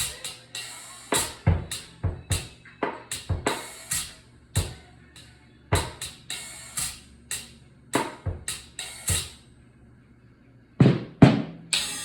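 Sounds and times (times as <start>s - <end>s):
cymbal strokes: 0.0s - 4.8s, 5.8s - 9.5s, 11.7s - 12.0s
kick drum hits: 1.2s - 2.5s, 3.1s - 3.6s, 5.7s - 6.1s, 8.0s - 9.3s, 10.8s - 11.6s
snare drum hits: 8.0s - 9.3s.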